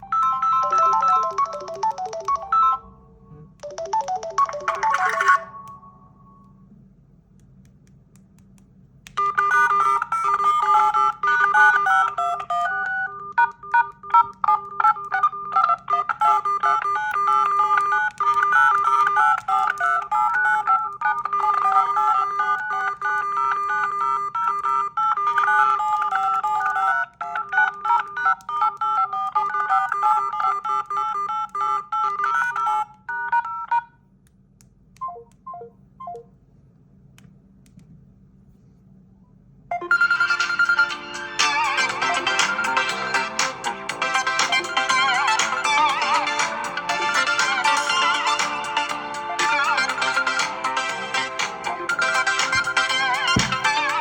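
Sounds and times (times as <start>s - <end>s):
phone ringtone melody: 0.0s - 3.0s, 3.6s - 6.2s, 9.2s - 33.8s, 39.7s - 54.0s.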